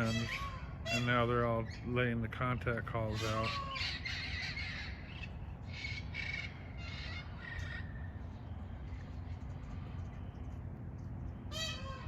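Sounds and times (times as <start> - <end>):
peafowl calls: 0.0 - 1.4, 3.1 - 8.2, 11.5 - 12.0
low background rumble: 0.0 - 12.0.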